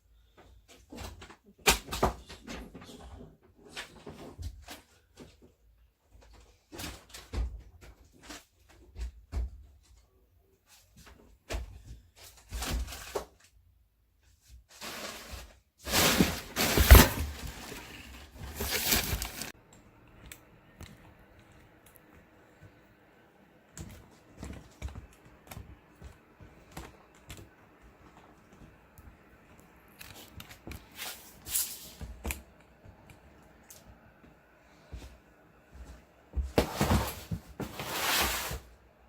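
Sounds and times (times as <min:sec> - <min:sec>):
loud rustling and scraping: 0:14.7 - 0:19.6, 0:36.6 - 0:38.7.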